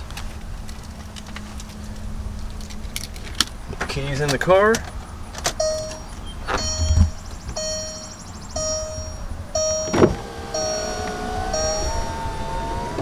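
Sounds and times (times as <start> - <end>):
car warning chime: 5.5 - 13.0.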